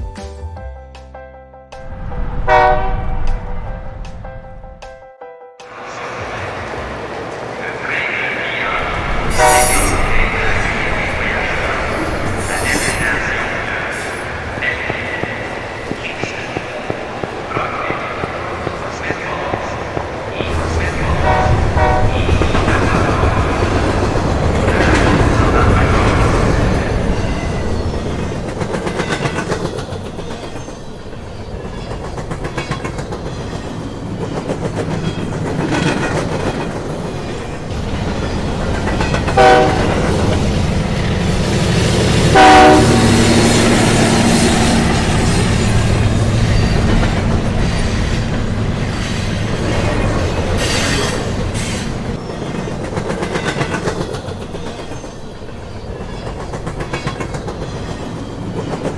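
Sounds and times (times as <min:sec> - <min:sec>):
train horn blasts: 0:02.4 - 0:03.3, 0:07.9 - 0:14.1, 0:20.4 - 0:23.0, 0:39.3 - 0:40.3, 0:42.2 - 0:44.3
train wheels clickety-clack: 0:08.4 - 0:58.9.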